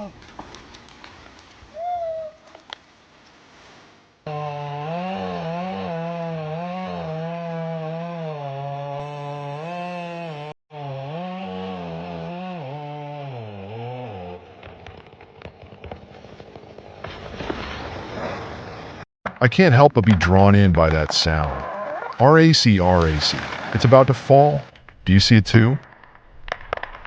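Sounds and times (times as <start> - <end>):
cracks and clicks: 0.1 - 1.6, 25.7 - 27.0
chainsaw cutting into tree: 4.2 - 16.0.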